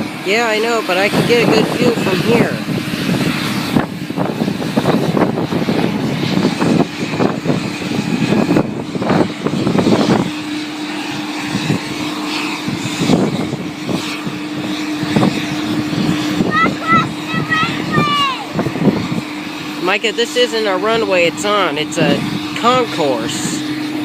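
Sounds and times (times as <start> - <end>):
jet aircraft engine hum: 0.0 - 24.0
uneven rushing sound: 0.0 - 24.0.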